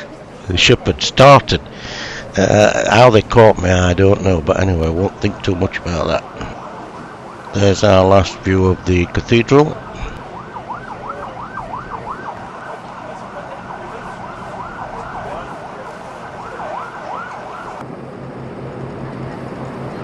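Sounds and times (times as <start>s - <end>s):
low engine hum: 0.0s - 20.0s
siren yelping: 4.6s - 17.8s.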